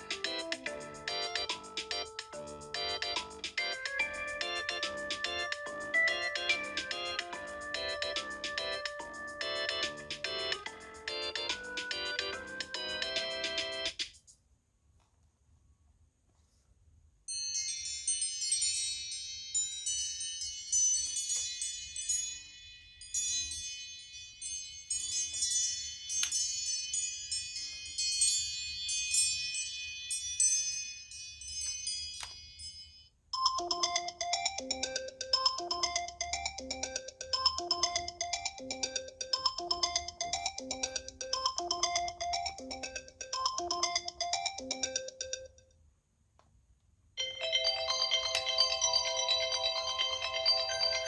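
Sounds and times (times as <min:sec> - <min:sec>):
bell-like chiming ringtone: 0:00.0 - 0:14.0, 0:17.3 - 0:45.6, 0:47.2 - 0:51.0
low repeating ringtone melody: 0:00.0 - 0:14.0, 0:32.6 - 0:45.6, 0:47.2 - 0:51.0.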